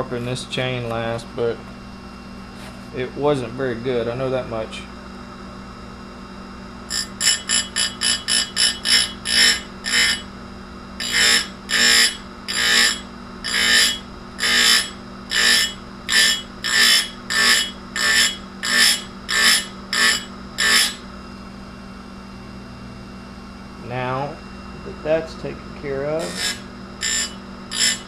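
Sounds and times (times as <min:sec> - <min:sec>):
grinder motor hum: 0:06.4 - 0:28.0
grinder wheel grinding chain: 0:06.9 - 0:10.3, 0:11.0 - 0:21.0, 0:26.2 - 0:28.0.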